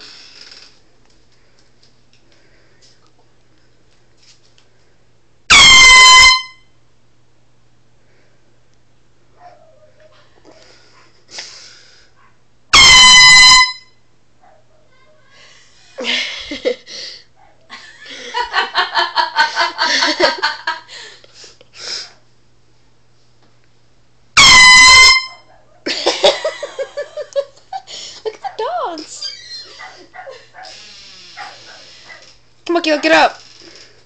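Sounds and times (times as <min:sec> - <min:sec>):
loud horn blasts: 0:05.5 - 0:06.8, 0:12.7 - 0:14.0, 0:24.4 - 0:25.4
people laughing: 0:17.7 - 0:20.9, 0:25.9 - 0:28.7
people talking: 0:28.4 - 0:29.3, 0:32.7 - 0:33.4.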